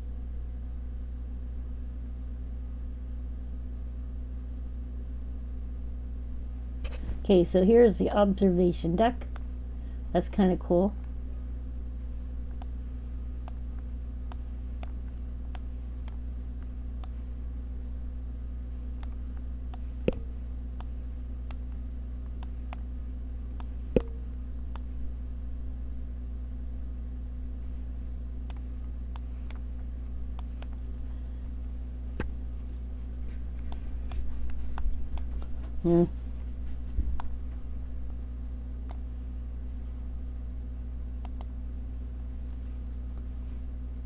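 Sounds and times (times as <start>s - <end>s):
low electrical hum: 0.0s - 44.0s
computer mouse clicking: 41.2s - 41.5s.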